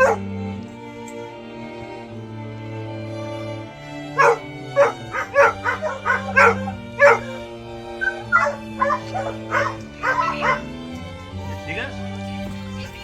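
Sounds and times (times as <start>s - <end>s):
dogs barking: 0.0s - 0.4s, 4.2s - 11.0s
background music: 0.0s - 13.0s.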